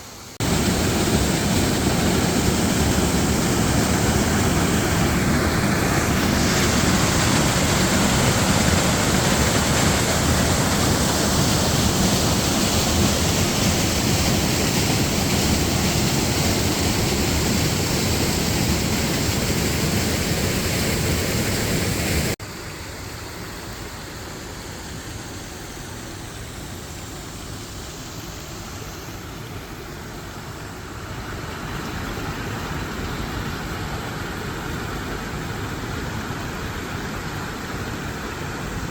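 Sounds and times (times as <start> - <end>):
water rushing into sinkhole: 0.4 - 22.3.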